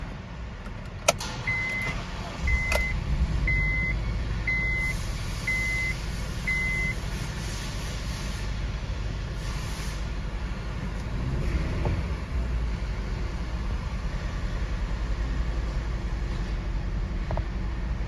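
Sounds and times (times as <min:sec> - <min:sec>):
car engine rumbling: 0:00.0 - 0:18.0
car warning chime beeping: 0:01.1 - 0:07.0.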